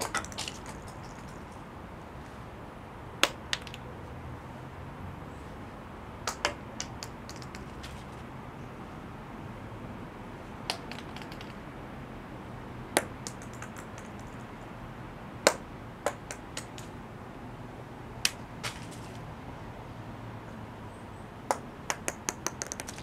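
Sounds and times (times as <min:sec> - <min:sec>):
acorns dropping on stone: 0:00.0 - 0:01.6, 0:03.2 - 0:03.8, 0:06.3 - 0:08.1, 0:10.7 - 0:11.6, 0:13.0 - 0:14.4, 0:15.5 - 0:16.9, 0:18.2 - 0:19.2, 0:21.5 - 0:23.0.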